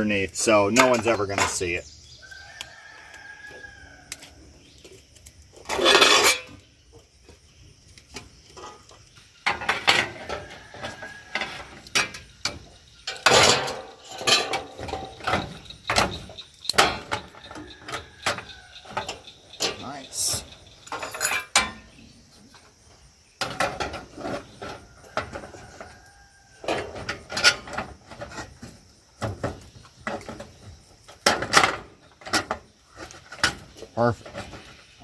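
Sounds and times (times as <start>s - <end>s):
frame parts clicking and knocking: 9.5s - 22.0s.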